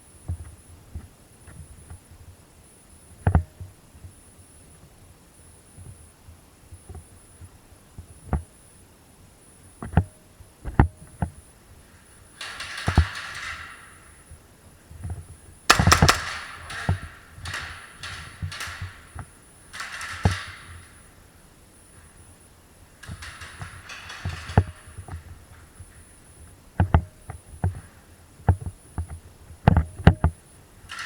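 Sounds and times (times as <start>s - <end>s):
sharp knocks and clicks: 12.4s - 14.4s, 15.0s - 22.3s, 22.9s - 27.9s.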